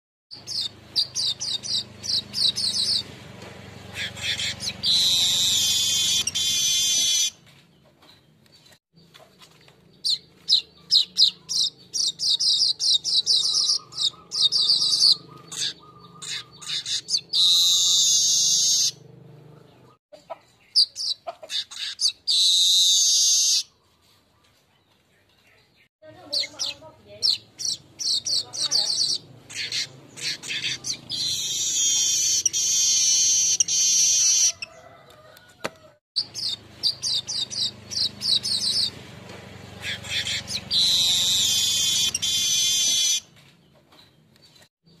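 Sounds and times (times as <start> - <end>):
weaver bird chirps and wheeze: 0.3 - 3.1, 3.9 - 7.4, 10.0 - 19.0, 20.6 - 23.8, 26.3 - 34.8, 36.2 - 39.0, 39.8 - 43.2.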